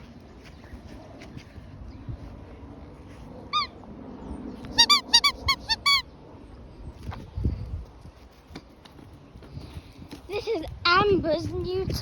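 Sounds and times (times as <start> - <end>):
dog toy squeaking: 4.8 - 6.0.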